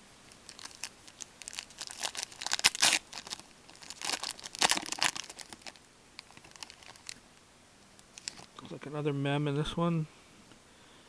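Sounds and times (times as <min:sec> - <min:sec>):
wrapper crinkling: 0:00.3 - 0:07.2, 0:08.1 - 0:08.6
foil card pack tearing: 0:00.5 - 0:07.2.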